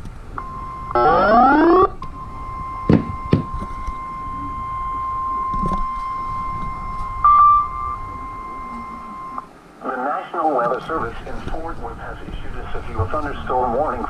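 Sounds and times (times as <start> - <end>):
rising chirp: 0.4 - 9.5
short beep: 0.4 - 9.5
steady alarm tone: 0.4 - 9.6.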